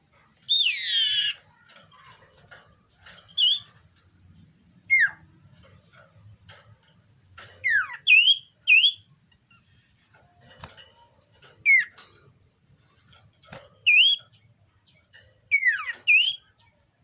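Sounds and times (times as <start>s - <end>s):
bird calling: 0.0s - 2.2s, 3.3s - 3.8s, 4.9s - 5.3s, 7.6s - 9.7s, 11.6s - 12.0s, 13.8s - 14.4s, 15.5s - 16.8s.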